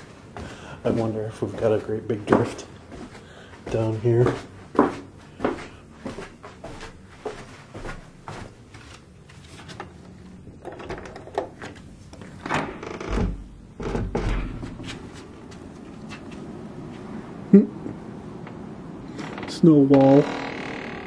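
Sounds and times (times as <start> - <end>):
door swinging open with thud: 12.4 - 15.1.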